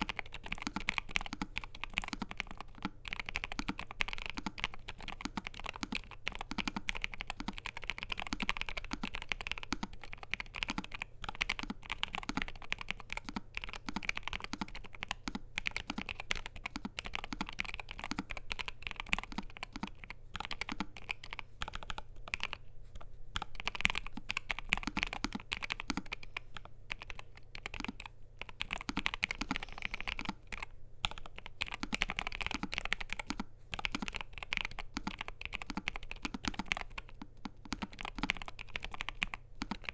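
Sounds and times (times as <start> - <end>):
mechanical keyboard typing: 0.0 - 22.6, 23.4 - 39.9.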